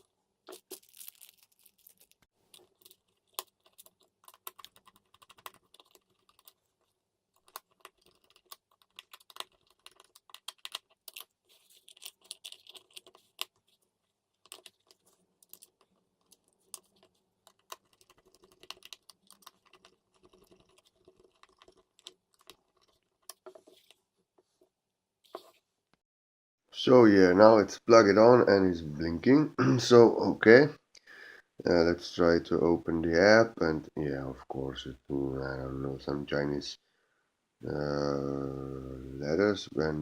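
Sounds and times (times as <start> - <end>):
rustling: 0.0 - 4.8.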